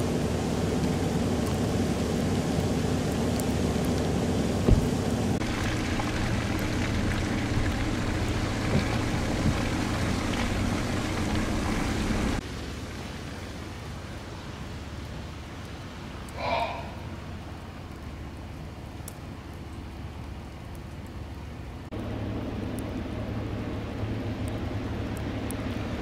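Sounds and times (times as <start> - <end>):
vehicle engine and road noise: 0.0 - 26.0
sharp thump: 4.6 - 5.0.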